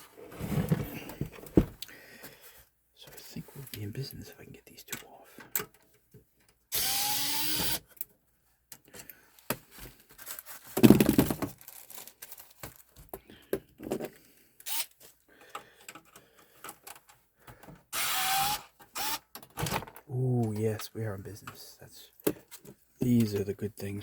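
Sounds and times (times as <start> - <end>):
power screwdriver whining: 6.7 - 7.8, 14.6 - 15.0, 17.9 - 19.3.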